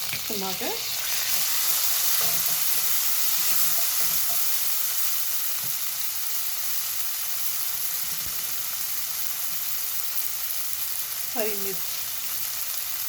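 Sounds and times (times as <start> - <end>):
tomatoes sizzling in hot oil: 0.0 - 13.0.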